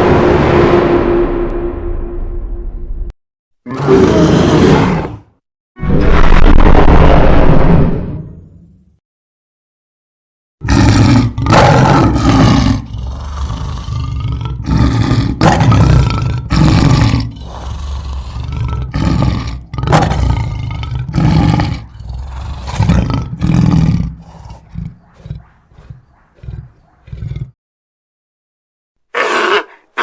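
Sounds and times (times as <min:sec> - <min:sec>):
monster roaring bellows: 0:03.7 - 0:05.3, 0:10.6 - 0:27.5.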